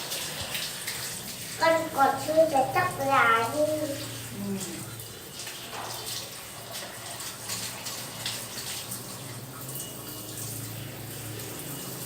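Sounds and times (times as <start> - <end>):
water running and splashing: 0.0 - 12.0.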